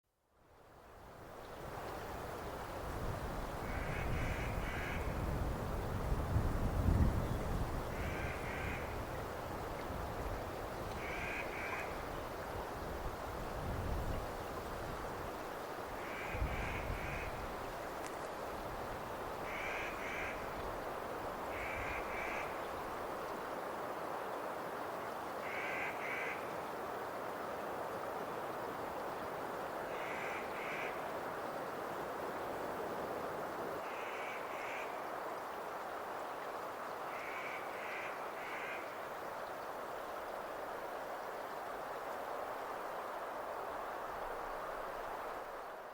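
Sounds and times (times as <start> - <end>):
background hiss: 0.2 - 45.9
crow cawing: 11.0 - 11.9, 19.4 - 20.4, 21.5 - 22.5, 25.4 - 26.4.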